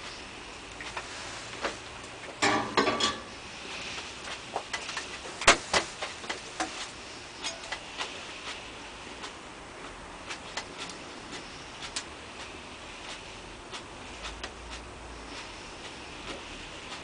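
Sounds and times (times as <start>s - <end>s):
wet chewing: 7.7s - 17.0s.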